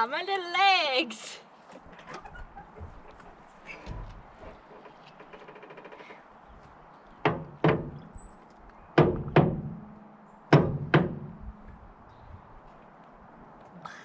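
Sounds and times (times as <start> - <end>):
sharp ringing knocks: 7.2 - 8.2, 9.0 - 11.7.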